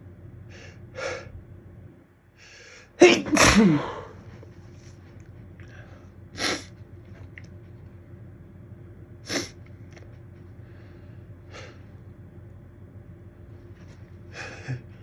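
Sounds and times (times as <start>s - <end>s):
person sneezing: 3.0s - 4.2s.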